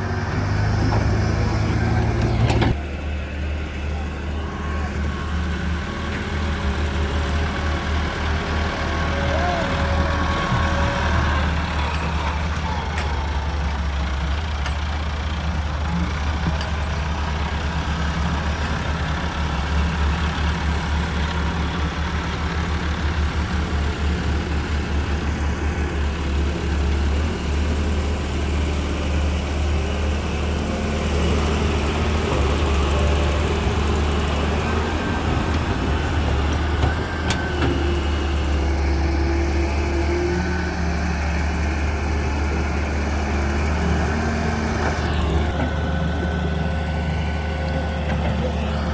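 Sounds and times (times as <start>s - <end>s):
diesel engine running: 0.0s - 48.9s.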